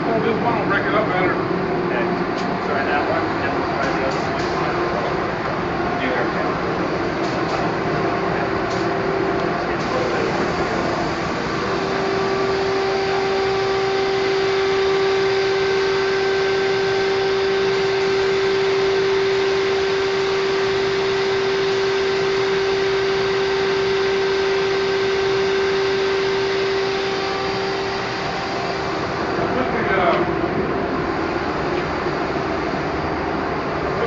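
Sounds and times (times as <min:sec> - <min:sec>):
compressed air hissing from spray gun: 0:06.8 - 0:07.8, 0:09.7 - 0:16.1.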